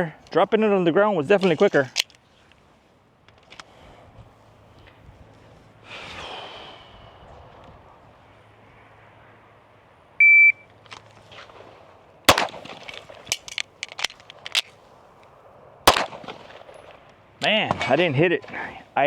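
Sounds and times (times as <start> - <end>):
shot timer beep: 10.2 - 10.6
pistol shots: 12.3 - 14.1, 15.8 - 17.0
small clicks and knocks: 12.6 - 15.3.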